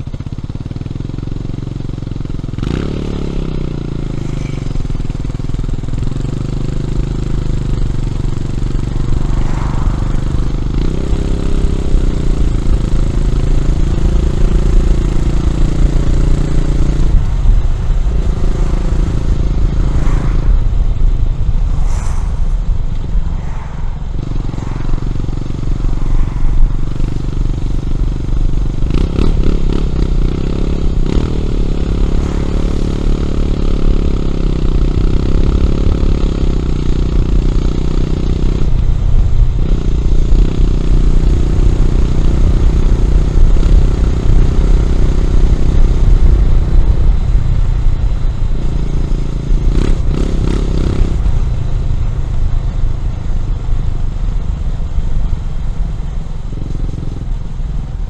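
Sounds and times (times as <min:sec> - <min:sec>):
motorcycle engine: 0:00.0 - 0:58.0
low rumble: 0:03.7 - 0:35.1.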